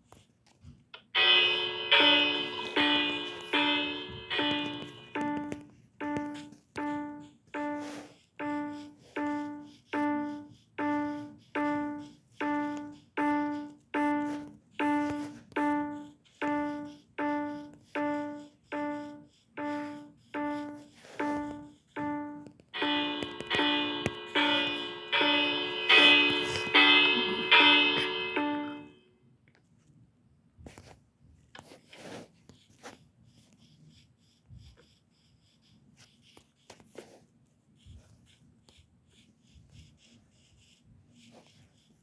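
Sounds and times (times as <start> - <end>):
ringing of several chime notes: 1.2 - 6.5, 21.2 - 29.0
fire alarm chime low note: 1.2 - 11.1, 19.6 - 29.0.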